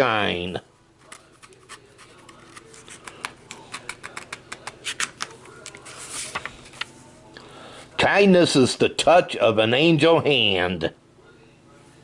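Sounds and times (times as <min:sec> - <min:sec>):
book pages turning and rustling: 0:01.0 - 0:07.0.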